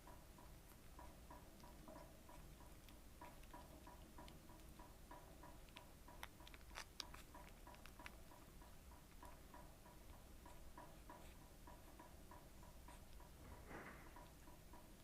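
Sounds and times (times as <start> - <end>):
puppies suckling clicks: 0.0 - 15.0.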